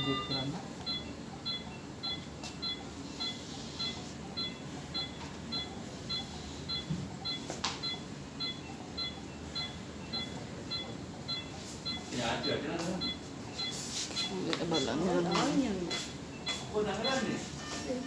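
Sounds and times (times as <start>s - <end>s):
short high electronic beeps: 0.0s - 13.8s.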